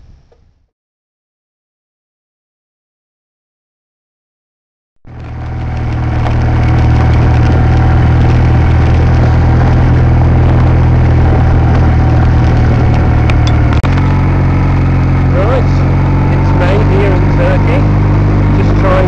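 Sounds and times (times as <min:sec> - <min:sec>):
motorcycle engine: 0:05.0 - 0:19.0
wind noise: 0:05.1 - 0:19.0.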